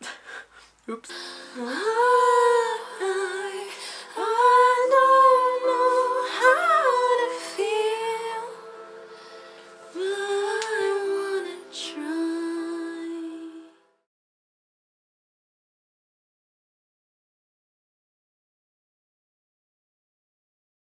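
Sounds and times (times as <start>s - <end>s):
woman singing slow melody: 0.9s - 13.9s
sustained chords: 1.1s - 13.8s.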